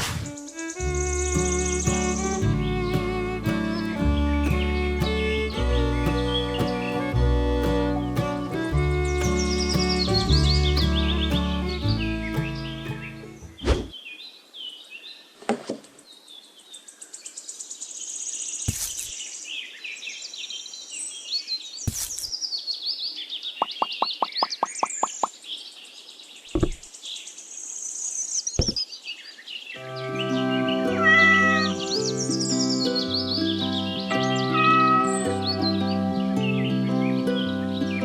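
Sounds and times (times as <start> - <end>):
birds chirping and twittering: 0.0 - 38.0
sharp knocks: 26.6 - 26.9.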